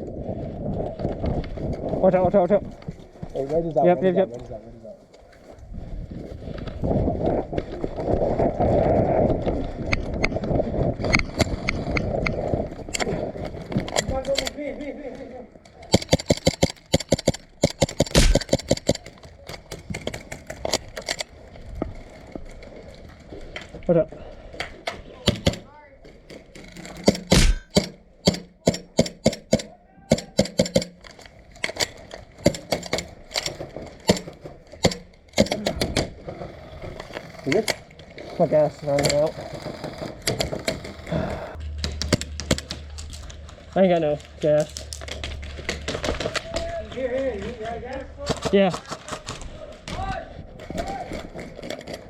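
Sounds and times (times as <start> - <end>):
wind buffeting microphone: 0.0 - 3.4, 5.6 - 14.4
sharp clicks: 15.7 - 21.3, 26.7 - 36.1
airsoft gunfire snapping: 15.9 - 19.1, 25.3 - 25.6, 27.0 - 31.1
loud crack: 15.9 - 19.2, 27.0 - 36.0.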